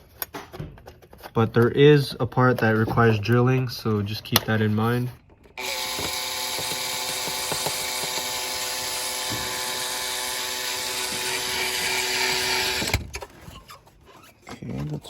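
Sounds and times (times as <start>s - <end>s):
power drill drilling: 5.6s - 13.1s.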